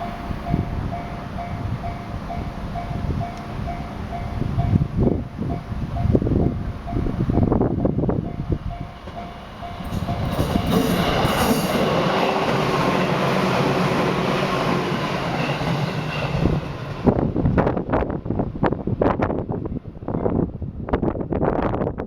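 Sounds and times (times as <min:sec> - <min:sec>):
crossing bell ringing: 0:00.0 - 0:17.0
train wheels rumbling on rails: 0:00.0 - 0:22.0.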